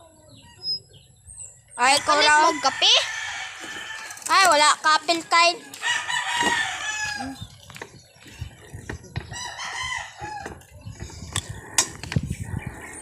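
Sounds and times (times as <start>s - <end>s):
rooster crowing: 2.0s - 4.2s, 5.7s - 7.4s, 9.3s - 10.6s.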